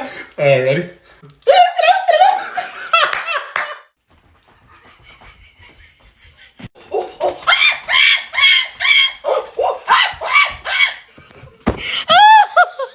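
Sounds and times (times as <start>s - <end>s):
high-pitched yelps: 7.3s - 11.0s.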